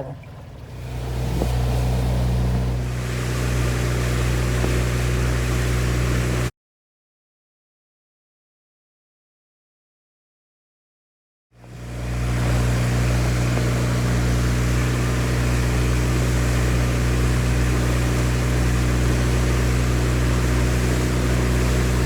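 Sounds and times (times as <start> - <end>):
boat engine drone: 0.0 - 6.5, 11.6 - 22.0
water rushing: 0.0 - 6.5
wind: 0.0 - 6.5, 11.6 - 22.0.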